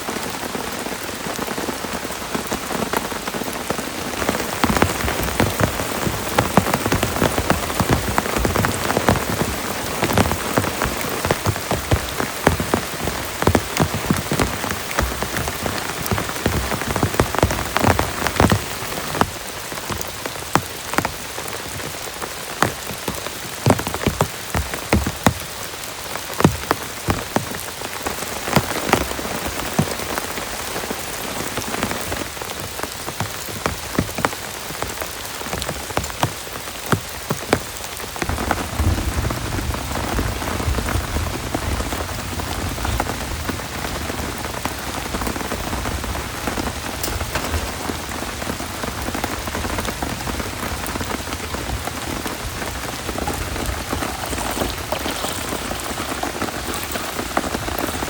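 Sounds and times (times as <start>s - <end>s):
heavy rain falling: 0.0s - 58.0s
large raindrops tapping: 0.0s - 58.0s.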